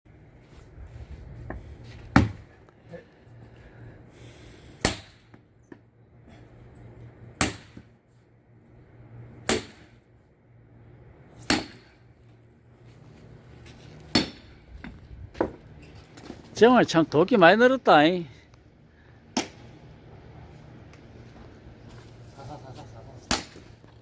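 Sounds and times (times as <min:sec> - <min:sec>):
axe chopping logs: 0:02.1 - 0:02.5, 0:04.8 - 0:05.4, 0:07.4 - 0:08.0, 0:09.4 - 0:10.0, 0:11.3 - 0:12.0, 0:14.1 - 0:14.6, 0:19.3 - 0:19.6, 0:23.2 - 0:23.7.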